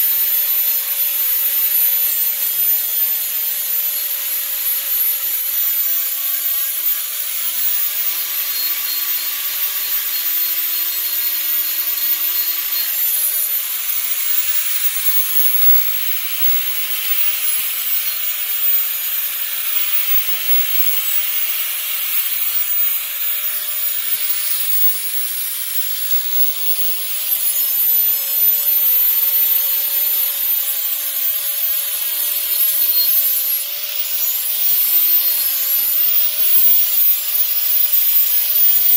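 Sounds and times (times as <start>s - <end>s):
electric grinder motor whine: 0.0s - 38.9s
abrasive grinding steel: 27.9s - 38.9s.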